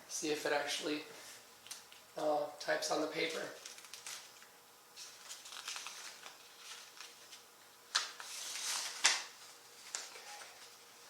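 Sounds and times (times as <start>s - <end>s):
paper rustling: 3.2s - 11.0s.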